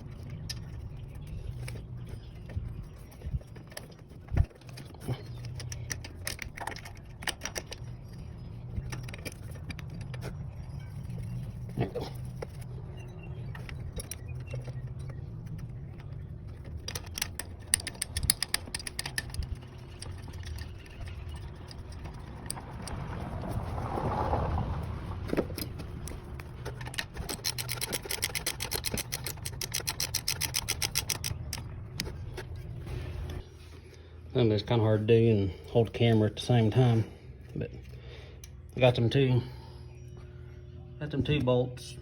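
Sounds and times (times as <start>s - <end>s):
ratchet wrench clicking: 16.7s - 23.0s, 26.9s - 31.6s.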